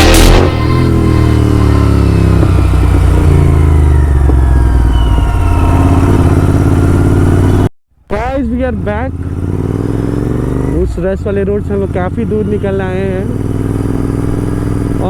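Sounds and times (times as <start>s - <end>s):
motorcycle engine revs dropping: 0.0s - 7.7s.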